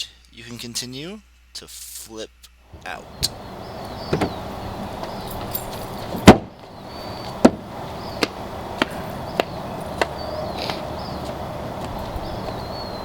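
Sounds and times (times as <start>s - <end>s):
loud sharp whack: 6.2s - 6.5s
faint high chirps: 12.0s - 13.0s.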